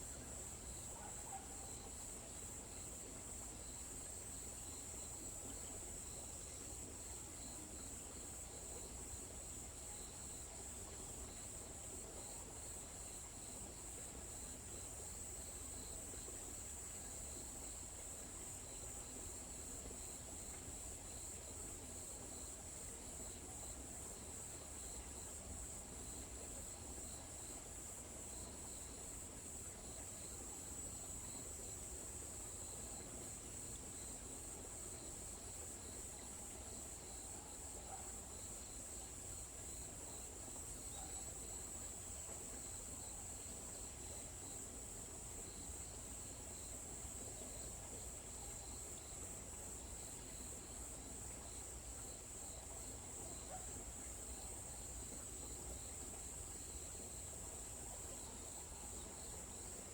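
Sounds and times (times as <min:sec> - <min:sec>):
insects chirring in high buzz: 0:00.0 - 0:59.9
lower insect chirp: 0:00.0 - 0:59.9.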